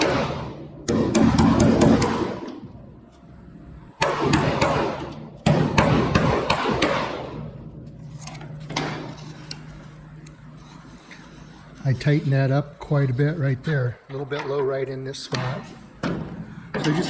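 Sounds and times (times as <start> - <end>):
hammer tapping on steel panel: 0.0 - 2.4.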